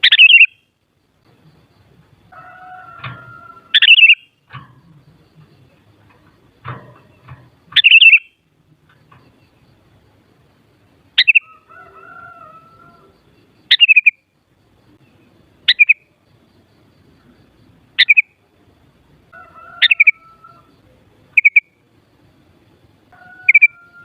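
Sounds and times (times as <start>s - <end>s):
bird chirping: 0.0s - 18.6s, 19.4s - 22.0s, 23.2s - 24.0s
low bird whistle: 3.7s - 4.3s, 7.8s - 8.4s.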